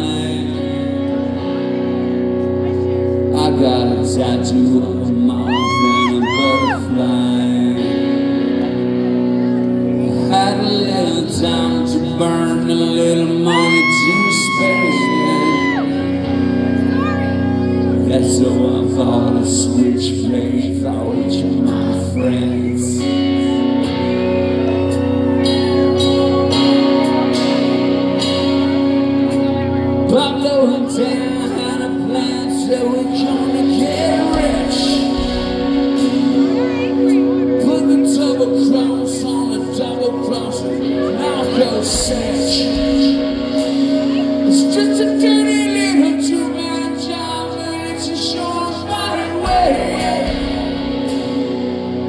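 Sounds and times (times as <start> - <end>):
electric guitar chords ringing: 0.0 - 52.0
live band playing: 5.5 - 7.0, 13.4 - 18.9, 23.4 - 52.0.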